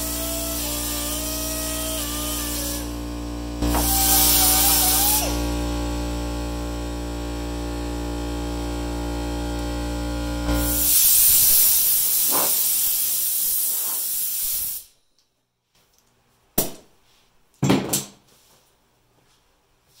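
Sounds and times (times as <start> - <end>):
spray hissing: 0.0 - 2.9, 3.6 - 5.4, 10.7 - 14.9.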